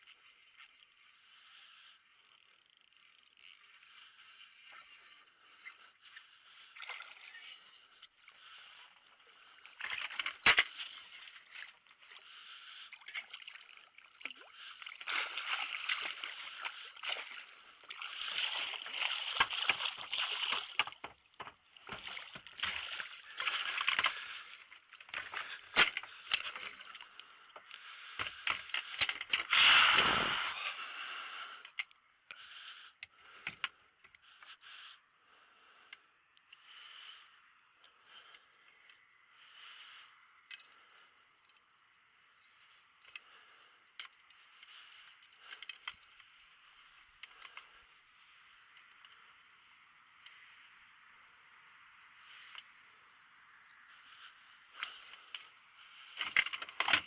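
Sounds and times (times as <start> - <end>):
water splashing against boat: 9.4 - 31.0.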